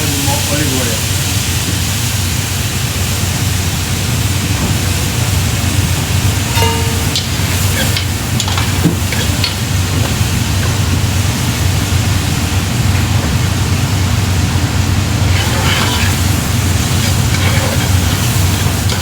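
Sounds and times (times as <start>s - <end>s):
onions sizzling in a pan: 0.0s - 19.0s.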